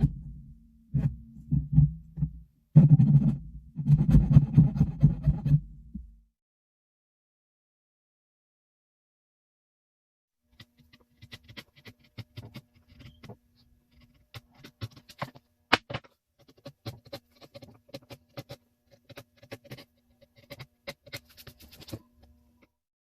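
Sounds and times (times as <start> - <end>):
faint steady hum: 0.0 - 6.3
clicks taps and scrapes: 10.5 - 22.7.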